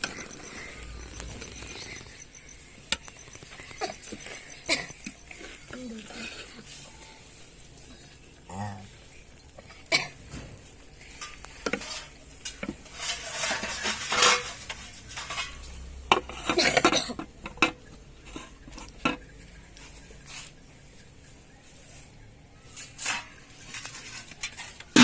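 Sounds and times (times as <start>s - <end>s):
metal utensil scraping a pot: 11.0s - 19.3s, 22.7s - 25.0s.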